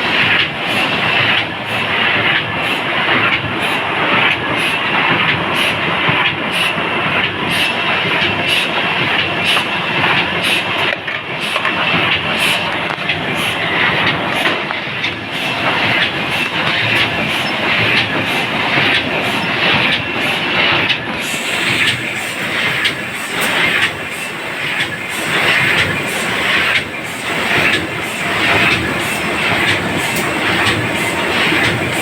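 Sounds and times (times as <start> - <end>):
laminating machine clattering: 11.9 - 32.0.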